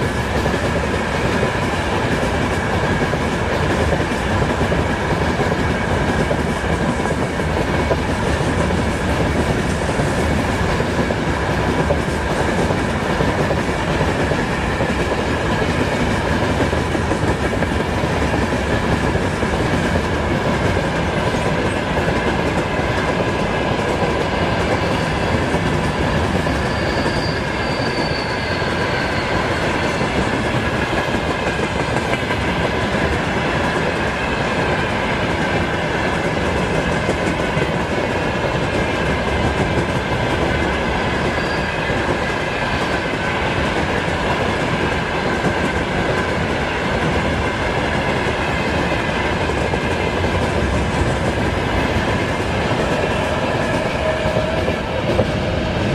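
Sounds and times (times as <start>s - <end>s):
train wheels clattering over rails: 0.0s - 55.9s
wheel on rail squeal: 26.2s - 30.4s, 40.8s - 43.2s, 52.8s - 55.9s.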